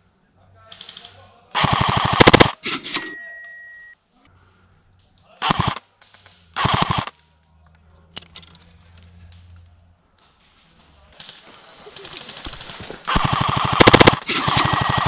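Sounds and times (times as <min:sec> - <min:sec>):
airsoft rifle full-auto bursts: 0:01.6 - 0:02.6, 0:05.4 - 0:05.8, 0:06.6 - 0:07.1, 0:12.3 - 0:15.0.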